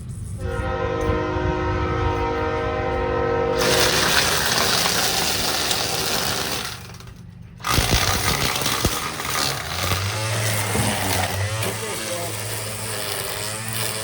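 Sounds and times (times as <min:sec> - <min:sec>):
small motor tool whirring: 0:03.6 - 0:14.0.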